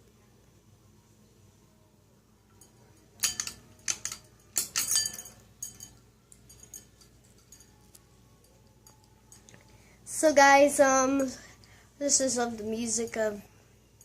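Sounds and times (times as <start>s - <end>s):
pull chain clinking against glass: 2.6s - 9.6s.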